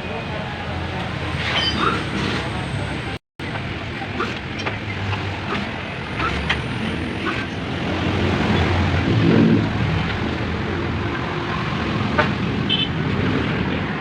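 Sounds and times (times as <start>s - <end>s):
motor vehicle rumble: 0.0s - 14.0s.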